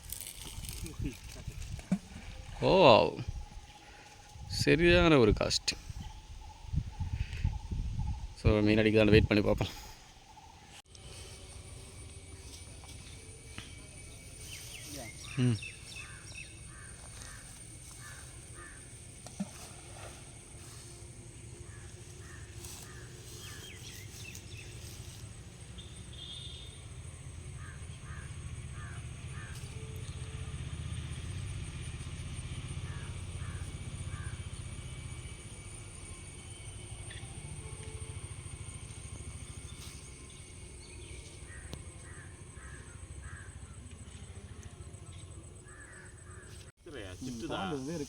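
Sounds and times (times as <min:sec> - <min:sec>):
short evenly spaced calls: 0:03.4 - 0:19.8, 0:20.5 - 0:29.8, 0:46.4 - 0:48.0.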